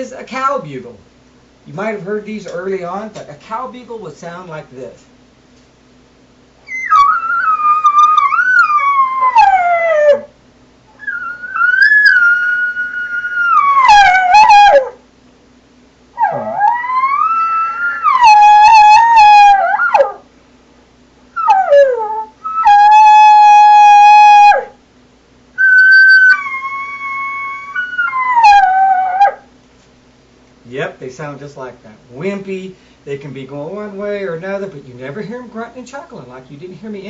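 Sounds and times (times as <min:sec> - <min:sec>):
high whistling elk calls: 0:06.6 - 0:09.8, 0:10.9 - 0:14.8, 0:16.2 - 0:20.2, 0:21.3 - 0:24.7, 0:25.6 - 0:29.4.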